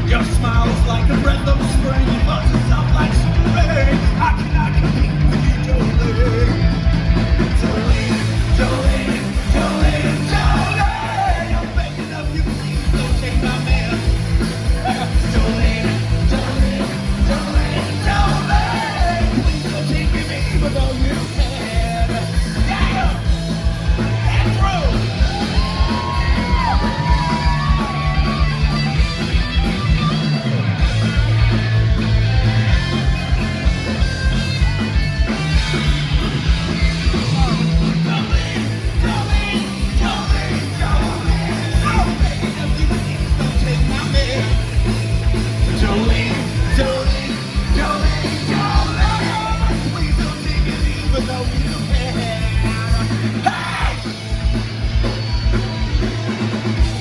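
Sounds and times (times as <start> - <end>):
rock band playing: 0.0 - 57.0
person shouting singing: 7.7 - 23.3, 23.9 - 28.9, 37.1 - 44.9, 45.6 - 54.1.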